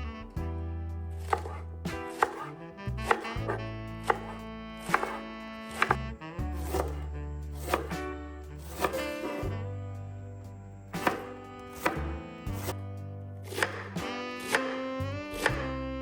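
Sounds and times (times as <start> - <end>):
soft background music: 0.0 - 16.0
knife chopping on cutting board: 1.2 - 7.0, 7.6 - 8.0, 8.6 - 9.5, 11.0 - 12.8, 13.5 - 15.7.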